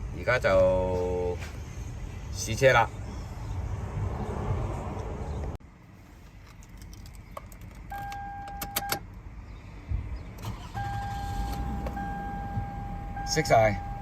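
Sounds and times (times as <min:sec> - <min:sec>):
car engine starting and running: 0:10.2 - 0:14.0
car electronic chime: 0:10.6 - 0:14.0.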